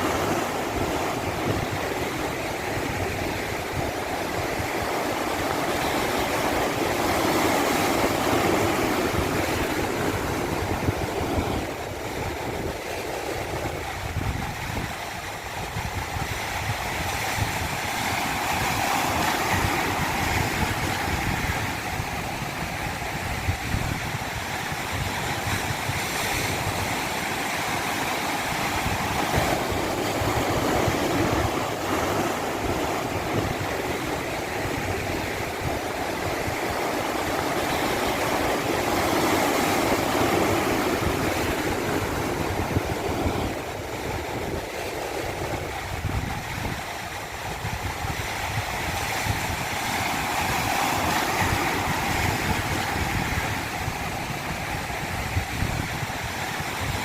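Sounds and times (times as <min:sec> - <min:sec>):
rushing water: 0:00.0 - 0:57.0.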